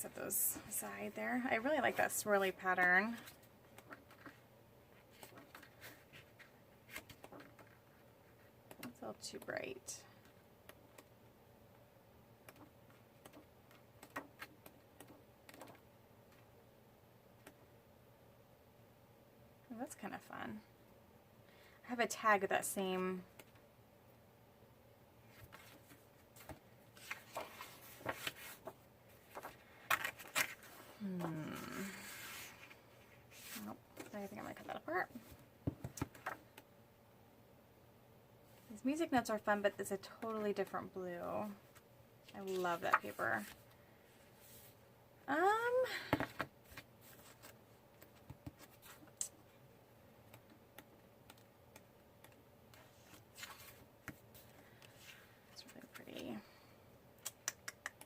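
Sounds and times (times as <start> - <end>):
paper sheets being leafed through: 25.3 - 34.7, 42.4 - 43.6, 52.7 - 56.0.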